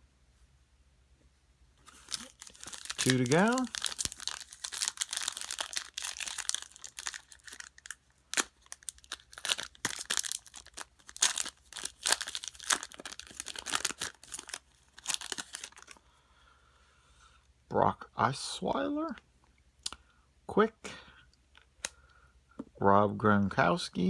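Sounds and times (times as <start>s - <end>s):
plastic wrapper tearing and crinkling: 1.8s - 16.0s.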